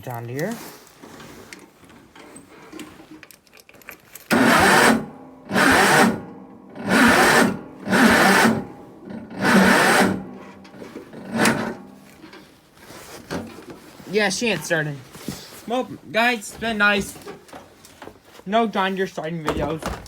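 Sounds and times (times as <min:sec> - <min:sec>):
engine cranking by starter: 0:04.2 - 0:12.5.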